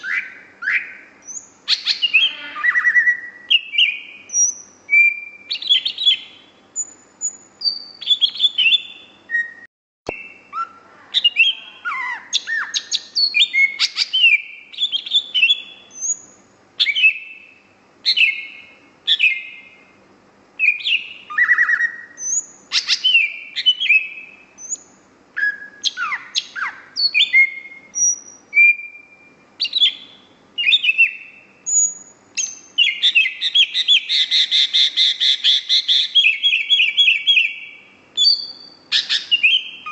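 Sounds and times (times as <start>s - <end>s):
bird singing whistles and chirps: 0.0s - 19.9s, 20.6s - 39.9s.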